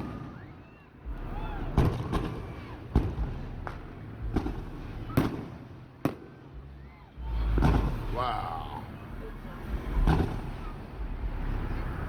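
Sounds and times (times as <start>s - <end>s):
fireworks bangs: 0.0s - 6.5s.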